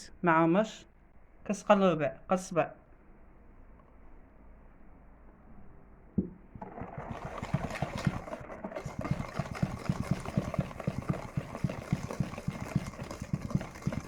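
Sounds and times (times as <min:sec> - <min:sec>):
electric hand mixer running: 0:06.6 - 0:14.0
rapid knocking of whisk: 0:06.6 - 0:14.0.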